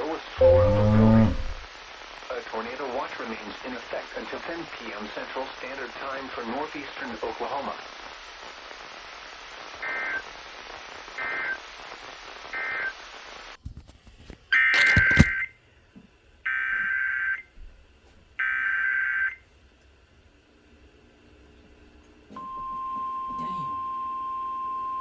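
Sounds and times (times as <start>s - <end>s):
radio static: 13.7s - 15.4s.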